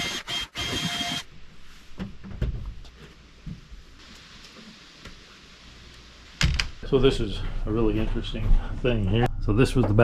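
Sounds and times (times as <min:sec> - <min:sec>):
power tool whirring: 0:00.0 - 0:01.3.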